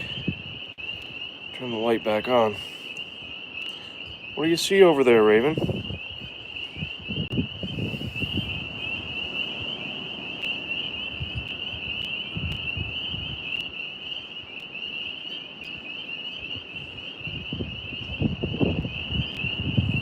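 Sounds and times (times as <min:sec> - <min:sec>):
wind gusting on microphone: 0:00.0 - 0:14.6, 0:15.6 - 0:20.0
tree frogs trilling: 0:00.0 - 0:20.0.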